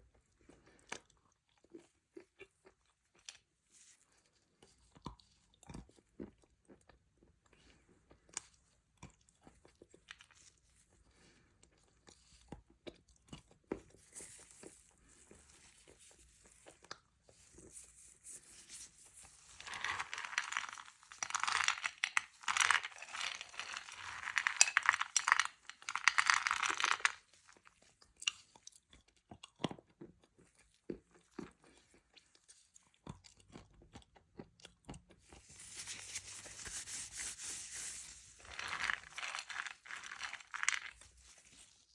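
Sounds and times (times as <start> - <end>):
crunching and chewing clay: 0.0 - 35.9, 38.0 - 41.9.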